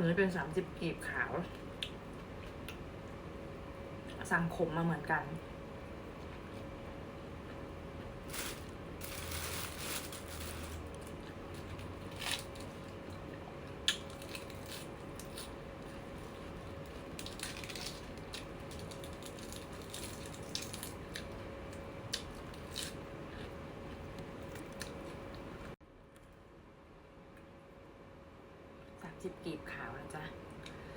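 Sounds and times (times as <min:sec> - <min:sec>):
faint steady hum: 0:00.0 - 0:30.9
small crunches and clicks: 0:08.3 - 0:23.5
person chewing: 0:11.1 - 0:21.3, 0:22.1 - 0:25.8.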